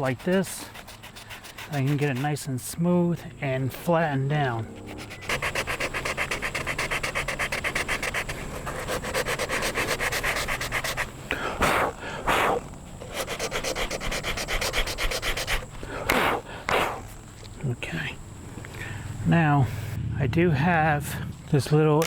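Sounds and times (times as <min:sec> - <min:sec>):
sanding whooshes: 0:00.0 - 0:02.5, 0:04.8 - 0:17.0
sandpaper rasping on filler: 0:00.0 - 0:02.7, 0:04.8 - 0:17.0.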